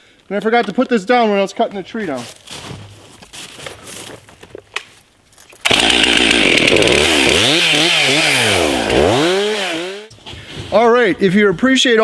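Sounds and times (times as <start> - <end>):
chainsaw running at high revs: 5.7 - 10.1.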